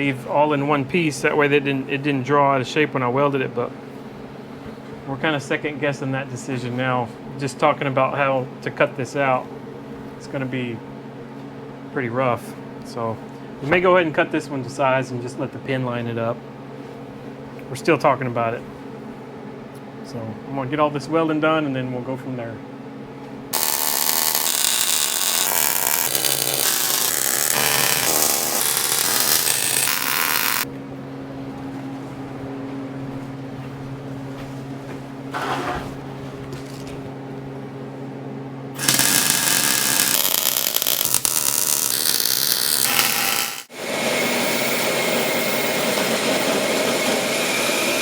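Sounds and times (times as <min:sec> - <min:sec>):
steady low hum: 0:00.0 - 0:43.8
welding arc crackling and hissing: 0:23.6 - 0:30.7, 0:38.8 - 0:48.0.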